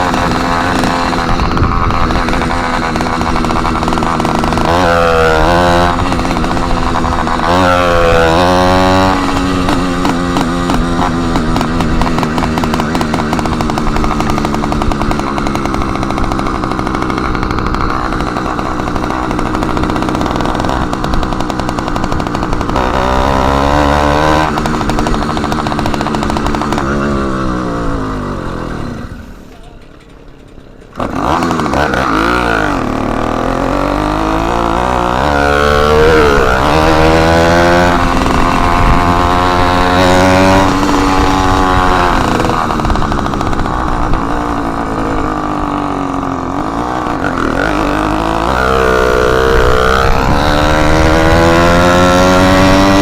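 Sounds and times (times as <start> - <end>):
small engine running loud: 0.0 - 53.0.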